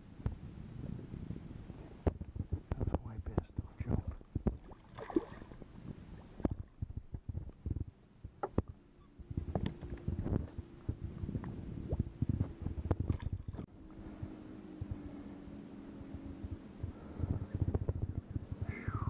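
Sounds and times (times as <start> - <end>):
steady low hum: 0.0 - 19.0
knocks and thumps in boat: 2.0 - 13.7.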